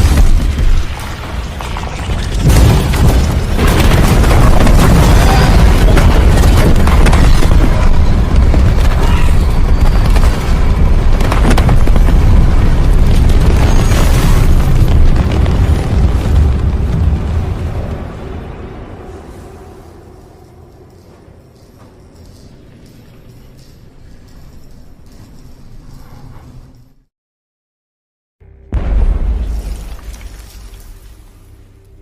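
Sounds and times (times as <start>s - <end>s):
crashing impacts: 0.0s - 17.8s
heavy rumbling boom: 2.3s - 20.0s, 28.7s - 31.6s.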